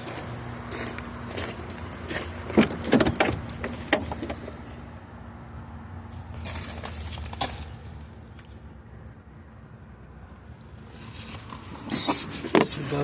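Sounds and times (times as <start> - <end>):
clicks and knocks of car interior parts: 2.1 - 4.6.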